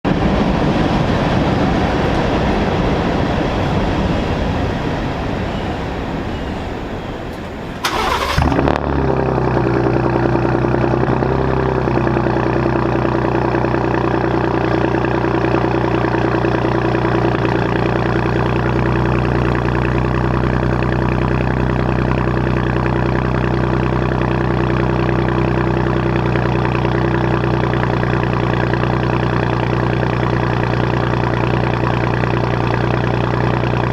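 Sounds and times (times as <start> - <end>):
engine starting and idling: 7.3 - 14.4
rough uneven rumble: 7.4 - 33.9.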